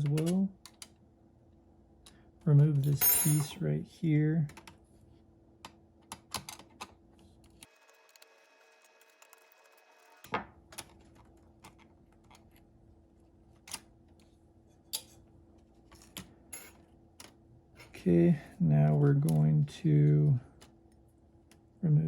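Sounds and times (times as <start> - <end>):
faint steady hum: 0.0 - 7.7.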